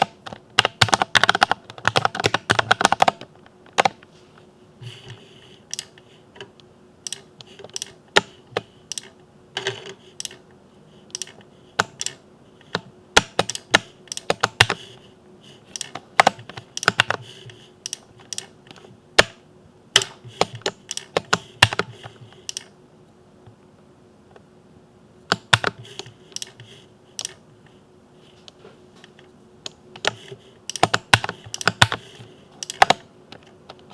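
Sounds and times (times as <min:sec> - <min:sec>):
typing on mechanical keyboard: 0:00.0 - 0:04.0, 0:13.2 - 0:14.8, 0:15.8 - 0:17.2, 0:20.0 - 0:22.7, 0:25.3 - 0:27.4, 0:30.0 - 0:33.5
faint steady hum: 0:00.0 - 0:33.9.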